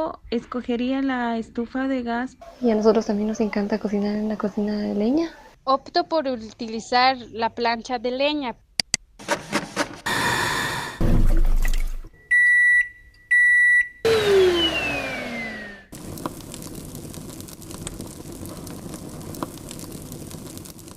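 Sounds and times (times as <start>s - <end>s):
noisy hiss: 15.9s - 20.9s.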